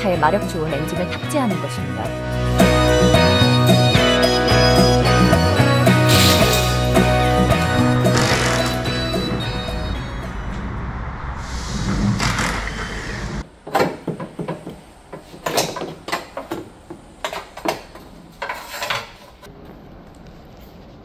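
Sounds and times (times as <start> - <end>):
rushing noise with low rumble: 9.9 - 13.5.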